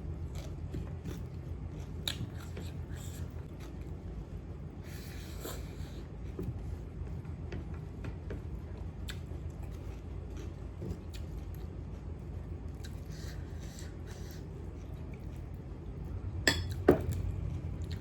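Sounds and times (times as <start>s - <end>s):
steady low rumble: 0.0s - 18.0s
chewing: 0.3s - 3.9s, 9.0s - 15.6s, 17.1s - 18.0s.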